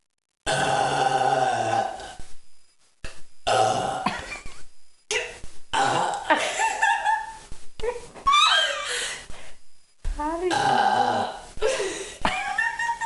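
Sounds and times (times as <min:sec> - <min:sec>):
man belching: 0:00.4 - 0:02.2, 0:03.4 - 0:04.2, 0:05.7 - 0:06.3, 0:10.5 - 0:11.4.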